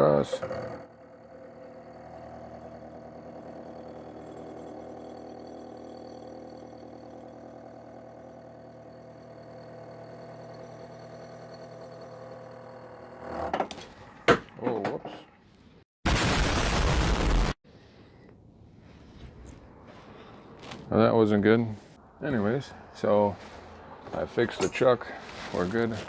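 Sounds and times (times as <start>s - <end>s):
metal lathe motor hum: 0.1s - 14.1s.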